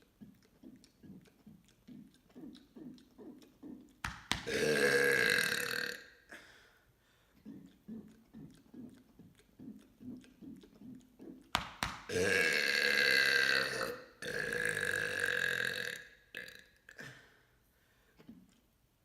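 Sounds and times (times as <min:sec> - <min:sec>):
soft quick gulping: 0:00.0 - 0:05.9, 0:07.0 - 0:12.8
man burping loudly: 0:04.4 - 0:06.4, 0:12.1 - 0:17.3.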